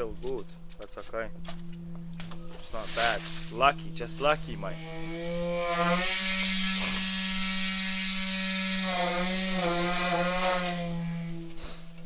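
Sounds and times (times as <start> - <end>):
concrete vibrator humming: 0.0 - 12.0.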